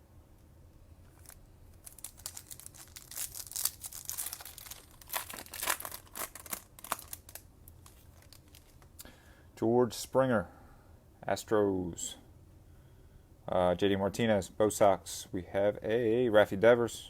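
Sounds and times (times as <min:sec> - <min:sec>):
foil wrapper tearing and crinkling: 0:01.1 - 0:08.9.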